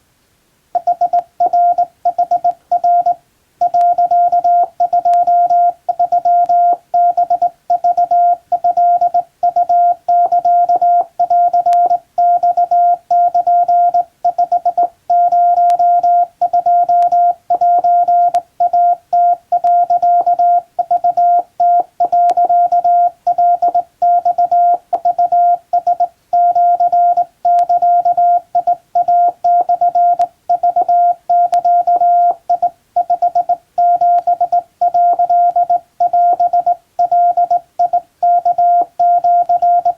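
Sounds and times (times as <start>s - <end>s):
morse code tone: 0.8s - 39.9s.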